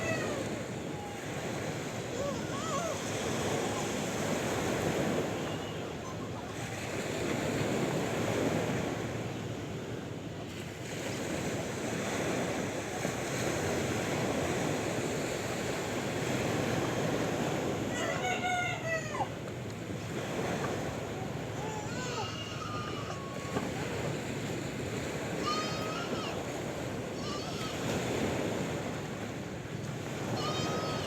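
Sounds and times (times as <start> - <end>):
sea waves washing: 0.0 - 31.0.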